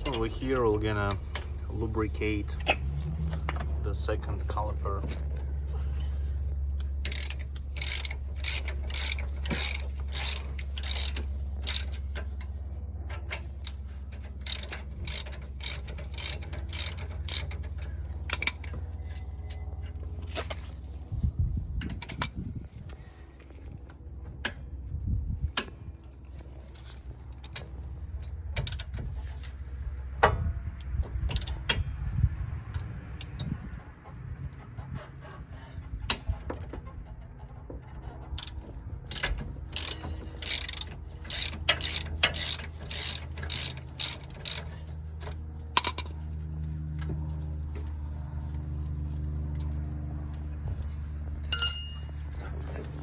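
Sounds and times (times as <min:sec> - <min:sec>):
low steady hum: 0:00.0 - 0:53.0
ratchet wrench clicking: 0:06.8 - 0:12.4, 0:13.1 - 0:18.8, 0:28.6 - 0:29.6, 0:38.3 - 0:46.1.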